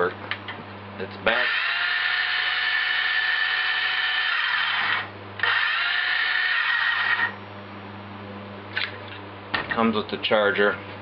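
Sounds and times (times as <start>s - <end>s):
circular saw whining: 1.3s - 7.4s.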